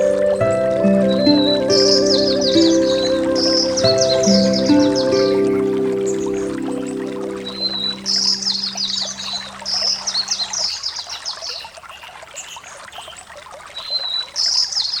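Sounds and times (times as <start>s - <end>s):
songbird singing high trills: 0.0s - 11.2s
trickling water: 0.0s - 15.0s.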